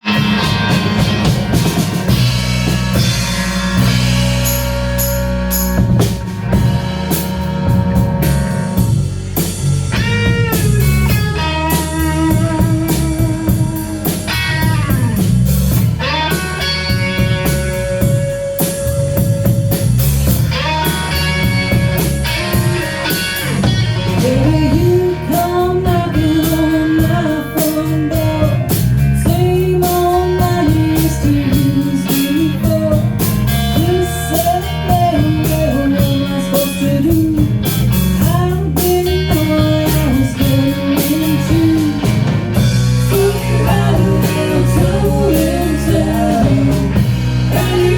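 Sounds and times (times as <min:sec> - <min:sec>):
blues-rock band playing: 0:00.0 - 0:47.9
electric guitar bending notes: 0:00.0 - 0:47.9.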